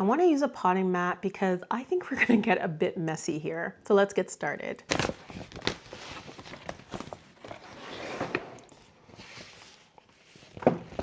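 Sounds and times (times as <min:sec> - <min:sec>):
plastic mat rustling: 0:04.9 - 0:11.0.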